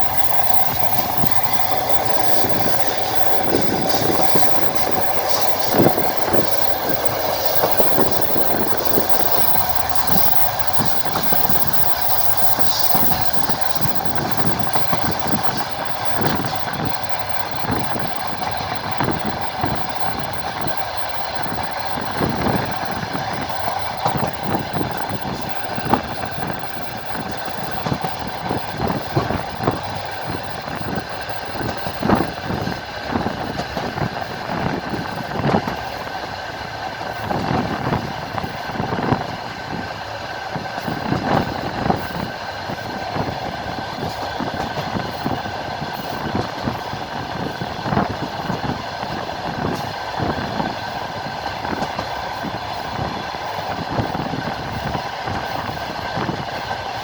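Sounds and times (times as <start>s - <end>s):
wheels clattering over rail joints: 0.0s - 36.0s
train rumble: 0.0s - 57.0s.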